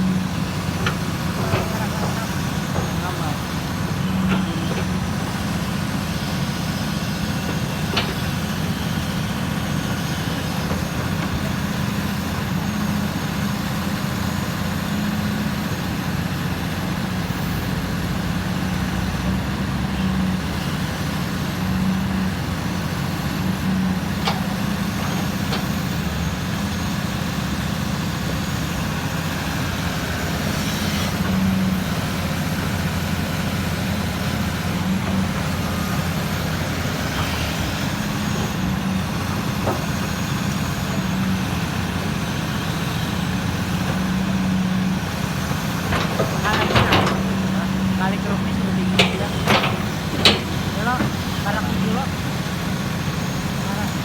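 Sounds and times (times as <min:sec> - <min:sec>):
excavator diesel engine running: 0:00.0 - 0:54.0
sharp clicks or knocks: 0:48.8 - 0:51.2.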